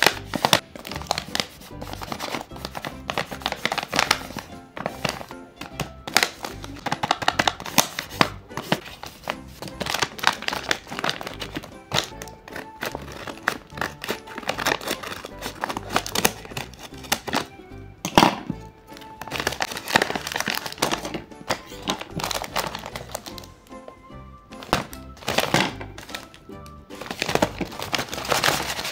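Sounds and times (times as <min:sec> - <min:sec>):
paper tearing: 0:00.0 - 0:05.3, 0:06.1 - 0:17.5, 0:27.0 - 0:28.9
paper and tape crinkling: 0:00.0 - 0:17.5, 0:18.2 - 0:23.6, 0:24.6 - 0:28.9
background music: 0:00.0 - 0:28.9.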